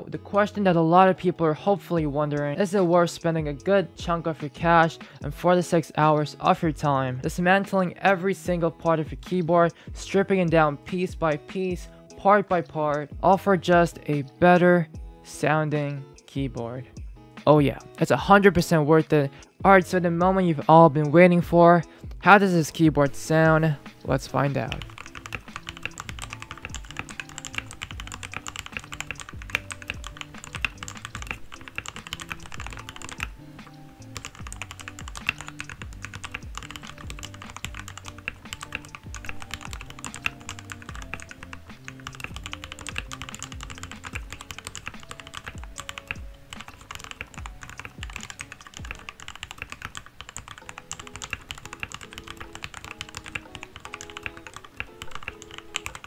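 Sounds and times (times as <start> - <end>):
background music: 0.0 - 56.0
mechanical keyboard typing: 24.6 - 56.0.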